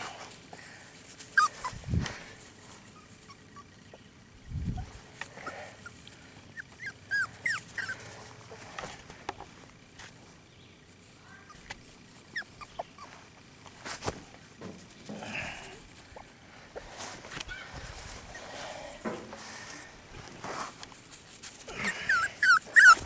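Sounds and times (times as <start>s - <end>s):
puppies whimpering and squeaking: 0.6s - 9.6s, 11.4s - 13.4s, 15.9s - 18.8s, 21.1s - 23.0s.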